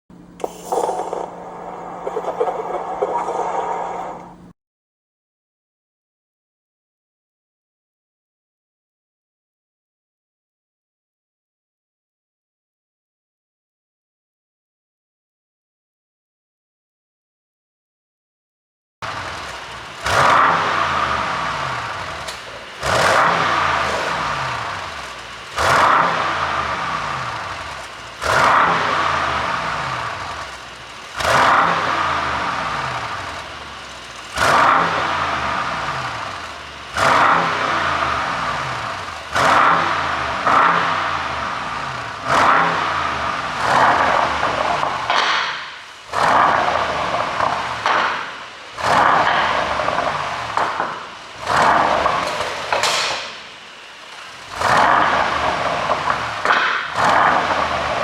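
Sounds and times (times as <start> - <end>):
car engine revving: 0.2 - 4.5, 19.0 - 58.0.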